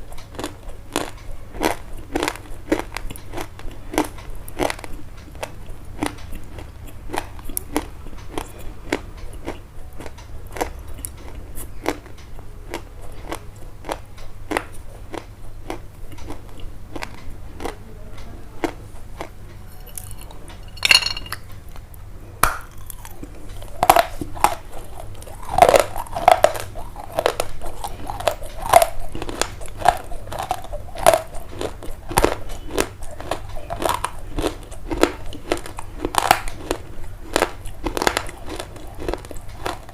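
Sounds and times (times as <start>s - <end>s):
crisp crunching: 22.6s - 39.9s.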